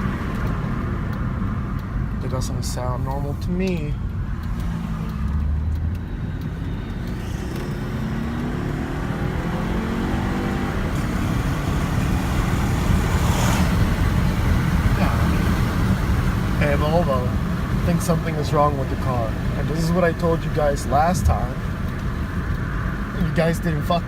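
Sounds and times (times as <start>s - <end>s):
car engine accelerating: 0.0s - 24.0s.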